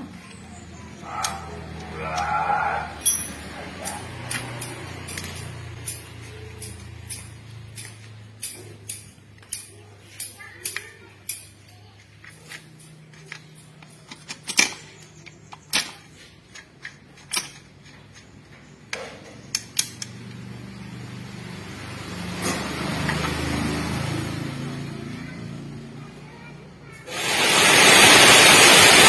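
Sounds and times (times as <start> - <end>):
metallic clicks of hand tools: 3.0 - 18.3, 18.9 - 20.5.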